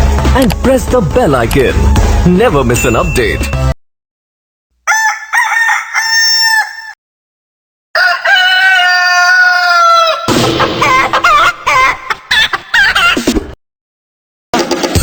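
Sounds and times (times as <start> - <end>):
rooster crowing: 4.8 - 7.0, 7.9 - 10.3.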